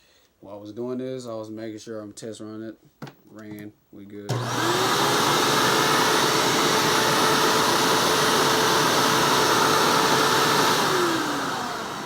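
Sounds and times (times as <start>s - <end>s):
vacuum cleaner motor running: 4.3s - 12.0s.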